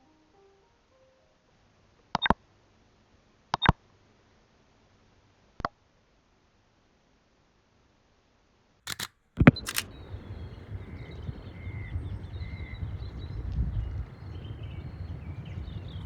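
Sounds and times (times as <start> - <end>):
camera shutter clicks: 8.9 - 10.5.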